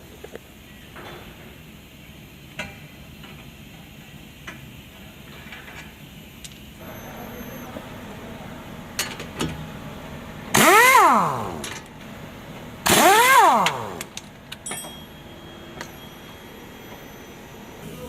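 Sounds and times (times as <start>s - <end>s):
vehicle engine revving: 6.8s - 14.5s.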